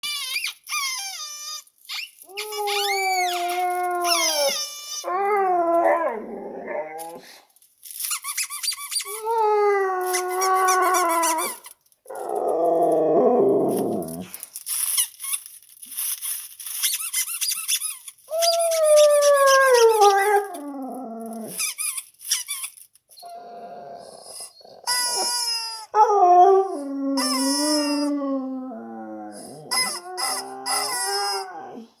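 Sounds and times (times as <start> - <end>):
high-pitched squeaks: 0.0 - 6.1, 7.8 - 12.9, 13.7 - 31.8
dog howling and growly vocalizing: 2.6 - 7.3, 9.3 - 14.3, 18.4 - 21.6, 23.2 - 25.2, 25.9 - 32.0.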